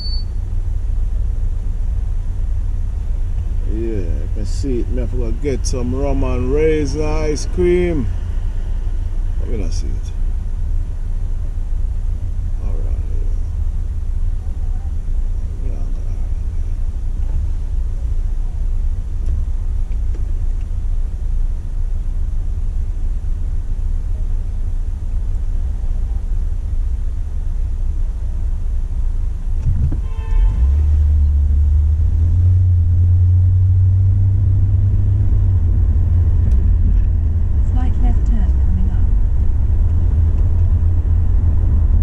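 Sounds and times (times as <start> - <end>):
brief pitched tone: 0.0 - 0.4
road noise: 0.0 - 42.0
vehicle engine rumble: 0.0 - 42.0.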